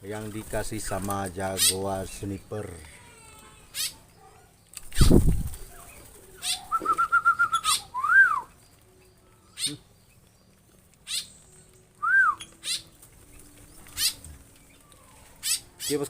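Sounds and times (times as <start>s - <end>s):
harsh rasping bird calls: 0.8s - 8.5s, 9.1s - 10.4s, 11.0s - 16.0s
loud flutter: 4.9s - 6.5s
rising and falling whistled notes: 6.7s - 8.6s, 12.0s - 12.6s.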